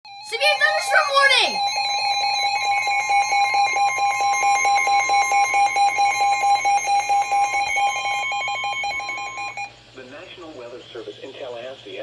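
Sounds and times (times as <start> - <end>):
rapid electronic beeping: 0.1 - 9.7
steady electronic tone: 0.1 - 9.7.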